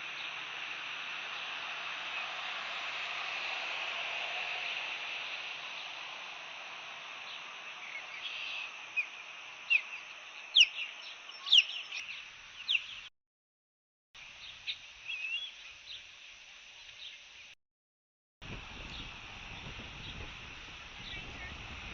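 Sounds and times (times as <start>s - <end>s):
wind hiss: 0.0s - 13.0s, 18.4s - 21.9s
osprey chirping: 7.8s - 13.1s.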